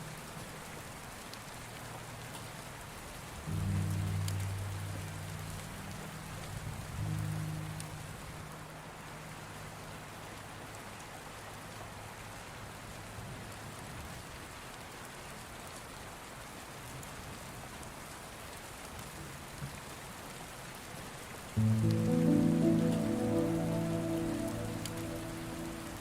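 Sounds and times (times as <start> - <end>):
steady rain falling: 0.0 - 26.0.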